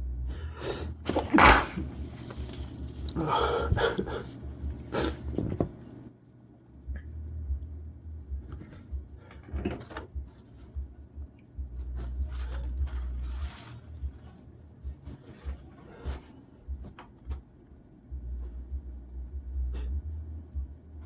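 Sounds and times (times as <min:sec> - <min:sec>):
man breathing and sniffing: 0:03.0 - 0:05.4, 0:15.1 - 0:17.0
low rumbling thumps: 0:06.9 - 0:21.0.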